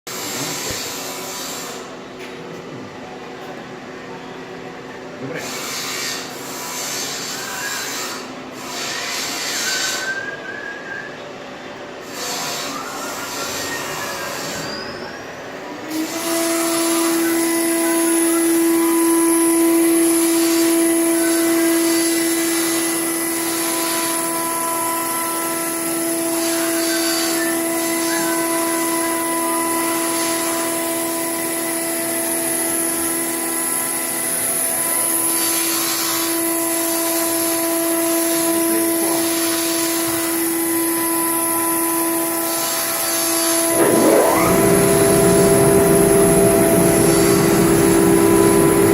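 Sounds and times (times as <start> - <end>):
router spindle whining: 42.2 - 48.9.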